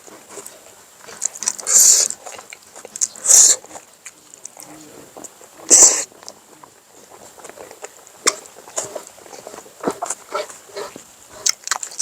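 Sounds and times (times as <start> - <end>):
chewing: 0.0 - 12.0
lip smacks and mouth clicks: 0.4 - 4.7, 11.4 - 12.0.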